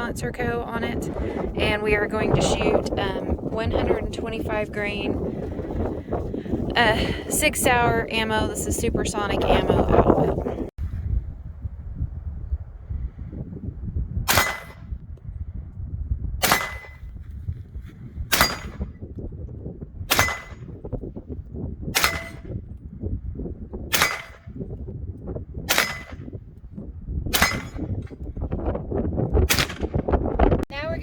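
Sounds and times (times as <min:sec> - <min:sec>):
suppressed rifle shots: 0:14.3 - 0:14.8, 0:16.4 - 0:17.1, 0:18.3 - 0:18.8, 0:20.1 - 0:20.7, 0:22.0 - 0:22.5, 0:23.9 - 0:24.5, 0:25.7 - 0:26.3, 0:27.3 - 0:28.0, 0:29.5 - 0:30.0.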